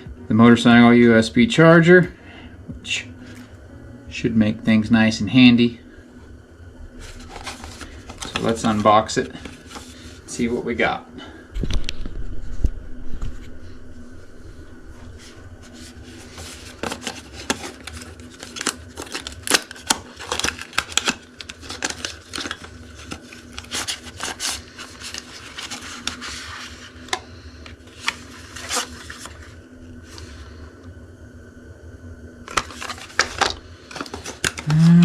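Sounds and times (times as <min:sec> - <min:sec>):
low hum: 0:00.0 - 0:19.6, 0:24.7 - 0:35.0
packaging clicks and rustles: 0:07.0 - 0:10.0, 0:16.3 - 0:29.6, 0:32.5 - 0:34.8.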